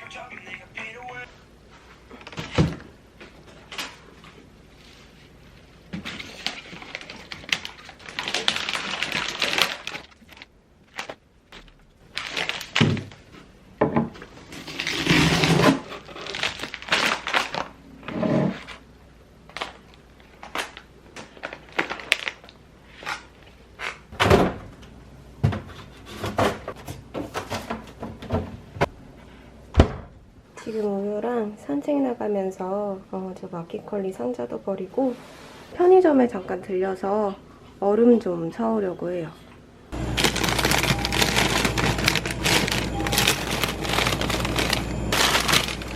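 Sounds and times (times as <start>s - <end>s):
rustling and scraping: 40.2s - 45.9s.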